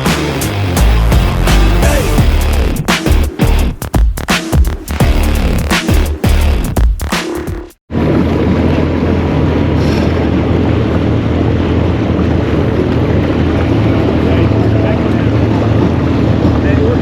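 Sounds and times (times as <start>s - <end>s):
boat motor running: 7.9s - 17.0s
wind on microphone: 7.9s - 17.0s.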